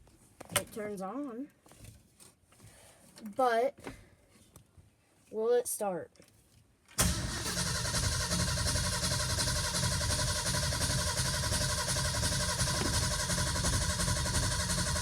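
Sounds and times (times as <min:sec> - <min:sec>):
engine cranking on starter motor: 0:07.0 - 0:15.0.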